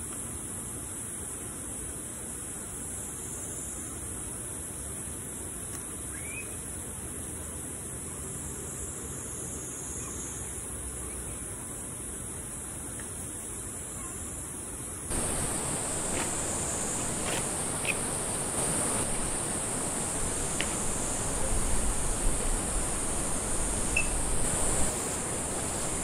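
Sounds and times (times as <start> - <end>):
background hiss: 0.0 - 26.0
high-pitched insect chorus: 7.5 - 26.0
faint ticks: 15.1 - 26.0.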